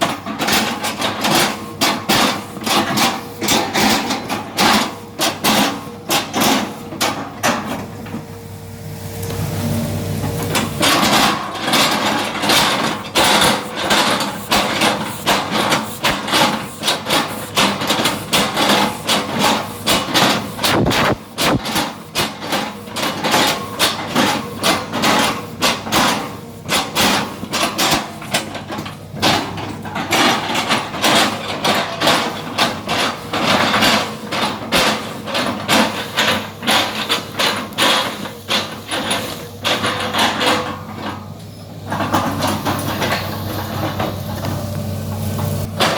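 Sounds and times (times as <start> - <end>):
diesel engine running: 0.0 - 45.9
rapid knocks and clanks: 10.6 - 41.2.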